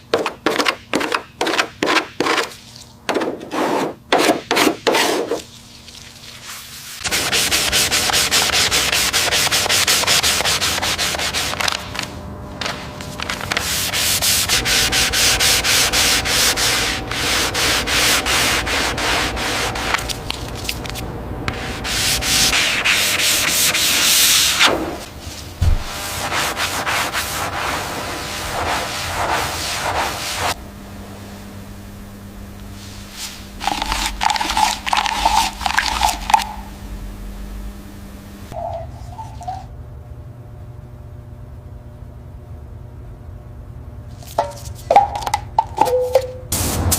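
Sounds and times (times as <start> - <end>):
sanding strokes on hard surface: 3.5 - 11.6, 13.6 - 20.1, 21.6 - 24.6, 26.0 - 30.6.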